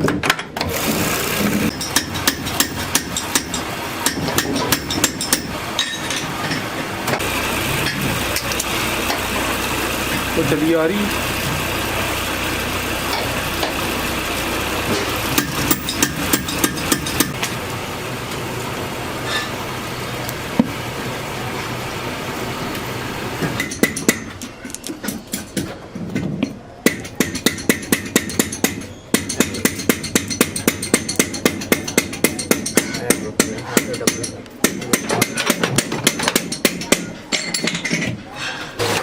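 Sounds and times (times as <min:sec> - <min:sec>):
steady machinery noise: 0:00.6 - 0:37.4
sharp metal knocks: 0:01.6 - 0:07.2, 0:14.9 - 0:17.5, 0:23.6 - 0:38.2.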